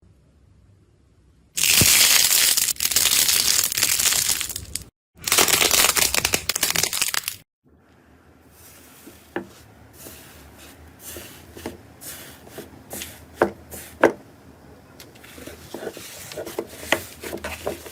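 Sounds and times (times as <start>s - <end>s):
slime crackling and crunching: 1.6s - 7.4s.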